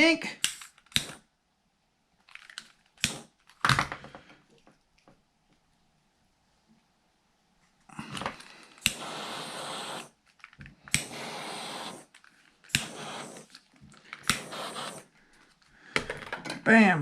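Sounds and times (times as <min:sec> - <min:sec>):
heat gun hissing blasts: 0:00.4 - 0:01.2, 0:03.0 - 0:03.4, 0:08.6 - 0:10.2, 0:10.9 - 0:13.6, 0:14.2 - 0:15.2.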